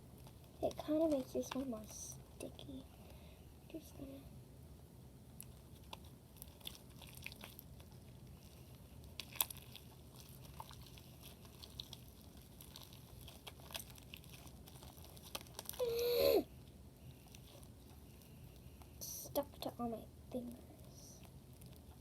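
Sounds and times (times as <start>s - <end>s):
slime squishing between fingers: 5.4s - 15.8s.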